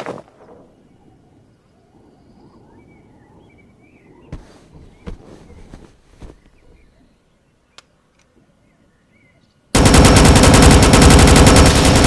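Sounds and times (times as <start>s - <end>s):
loud rapid rattling: 9.8s - 12.0s.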